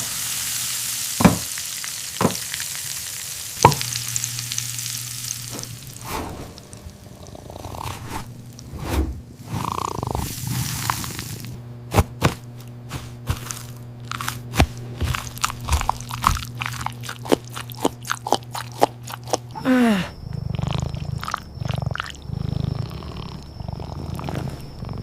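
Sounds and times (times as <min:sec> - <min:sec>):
low steady hum: 0:03.4 - 0:25.0
cat purring: 0:05.4 - 0:25.0
crunchy biting and chewing: 0:09.4 - 0:19.6, 0:20.3 - 0:24.7.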